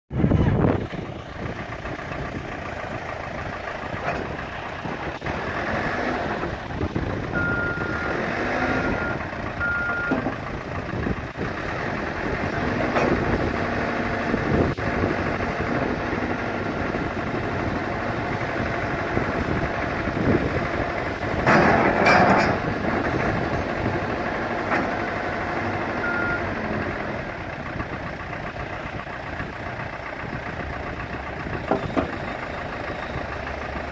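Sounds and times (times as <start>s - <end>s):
diesel engine running: 0.1s - 33.9s
reversing alarm beeping: 7.3s - 10.4s, 26.0s - 26.6s.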